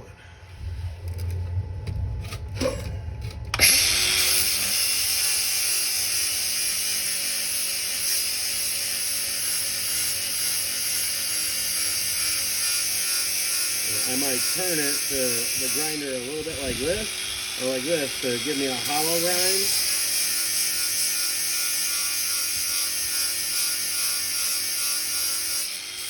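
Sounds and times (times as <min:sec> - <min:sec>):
low rumble: 0:00.0 - 0:04.0
grinder grinding metal: 0:02.2 - 0:26.0.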